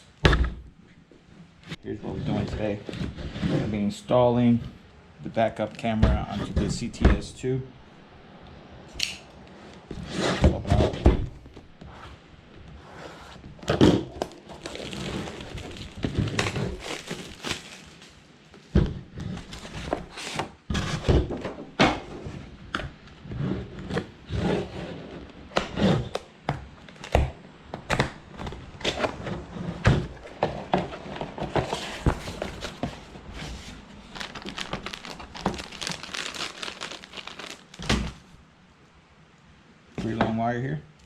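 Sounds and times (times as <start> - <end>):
cardboard box being handled: 30.3 - 38.2.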